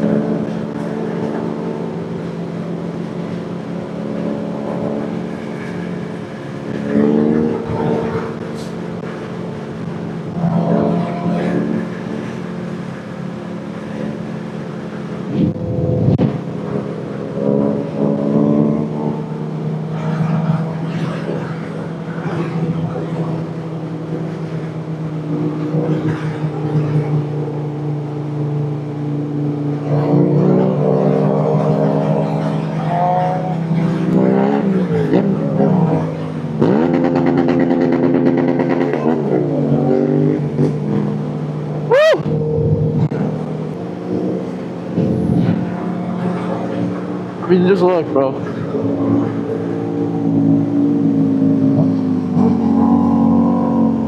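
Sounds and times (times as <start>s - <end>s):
road noise: 0.0s - 54.0s
wind noise: 15.2s - 16.7s
motorcycle engine revving: 33.8s - 47.2s.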